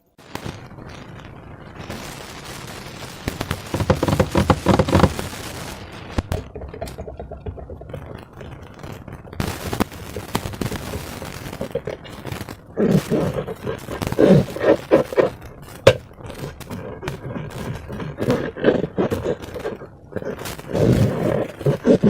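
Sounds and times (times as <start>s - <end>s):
slime squishing by hand: 3.6s - 5.2s.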